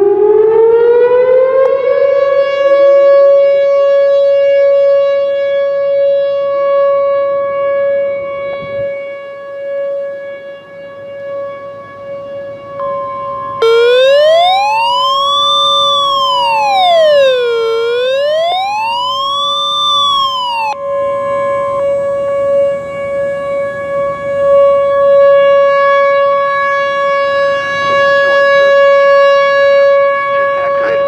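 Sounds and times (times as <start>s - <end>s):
wailing siren: 0.0s - 4.2s, 13.6s - 28.6s
siren steady tone: 12.8s - 25.8s.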